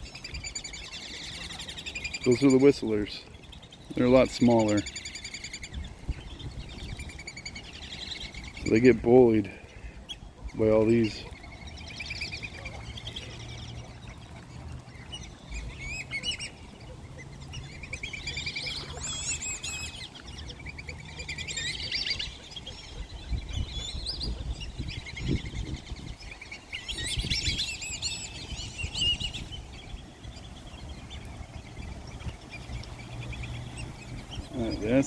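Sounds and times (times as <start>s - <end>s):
whistling ducks calling: 0.0s - 35.0s.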